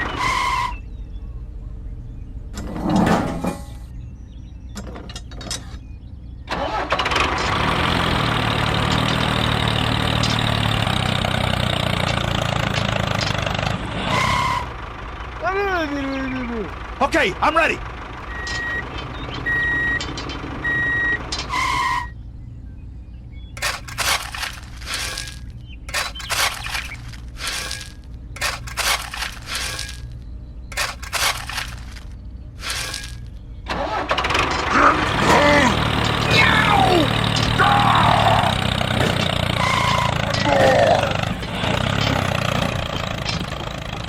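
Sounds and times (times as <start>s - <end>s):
clattering: 2.6s - 3.9s, 4.7s - 5.8s, 7.2s - 13.8s, 18.3s - 21.9s, 23.6s - 36.4s, 38.8s - 40.5s
small engine running: 6.6s - 14.6s, 23.6s - 44.0s.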